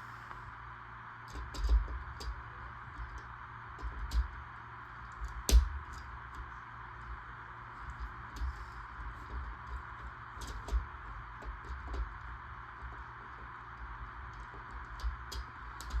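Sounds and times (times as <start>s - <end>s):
steady hiss: 0.0s - 1.2s.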